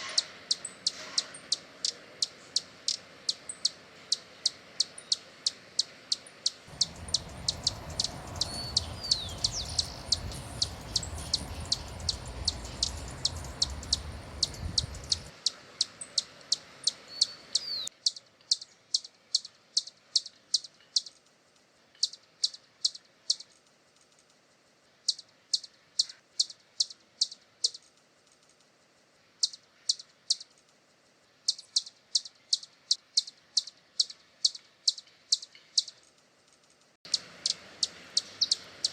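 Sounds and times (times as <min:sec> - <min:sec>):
hummingbird chip notes: 0:06.7 - 0:15.3
hummingbird gliding chirps: 0:06.7 - 0:15.3
low rumble: 0:06.7 - 0:15.3.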